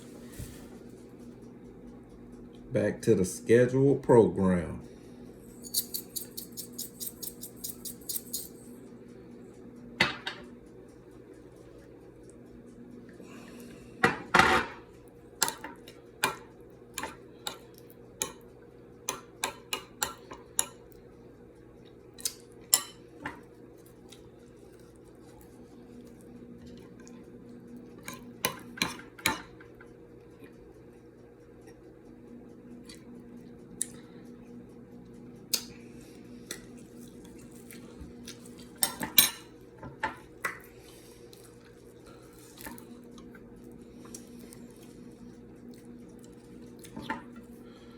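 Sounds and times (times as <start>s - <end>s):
steady low hum: 0.0s - 47.9s
cutlery clinking against plate: 5.6s - 8.6s, 19.1s - 20.8s, 22.7s - 23.4s, 38.8s - 40.7s.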